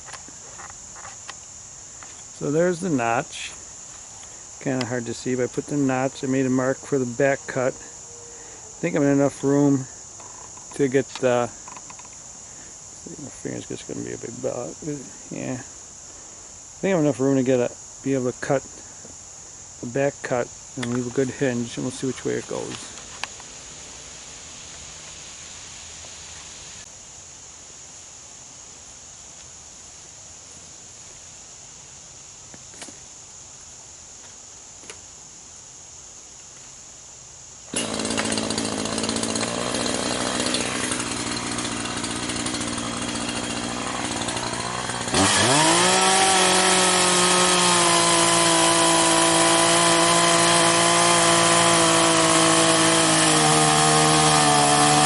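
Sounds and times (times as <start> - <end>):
high insect drone: 0.0 - 55.0
chainsaw running and revving: 37.7 - 55.0.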